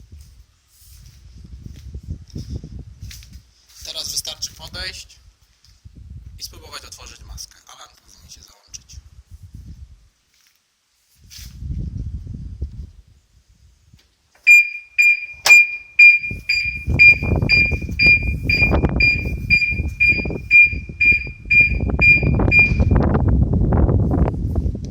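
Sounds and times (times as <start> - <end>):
car alarm beeping: 14.5 - 23.1
sharp click: 15.1 - 15.9.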